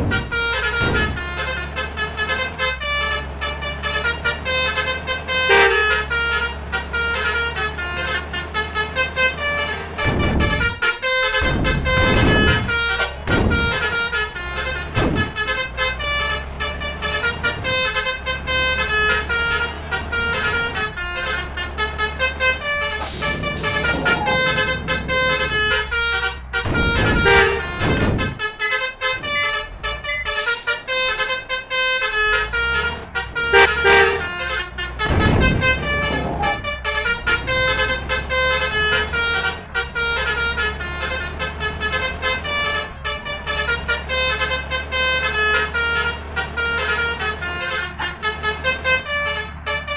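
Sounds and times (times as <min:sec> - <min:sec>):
low engine hum: 0:00.0 - 0:49.9
musical bus horns tooting: 0:00.0 - 0:49.9
rushes of noise: 0:23.0 - 0:26.1.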